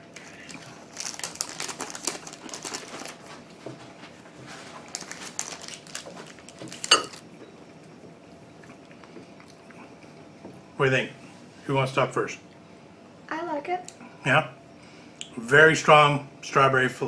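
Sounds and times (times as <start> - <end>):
candy wrapper crinkling: 0.2 - 3.4, 4.8 - 7.2.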